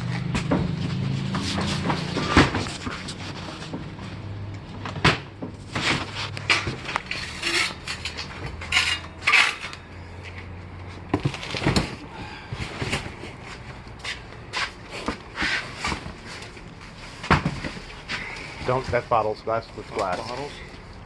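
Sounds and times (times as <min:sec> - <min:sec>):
objects clattering and clinking: 0:04.8 - 0:13.4.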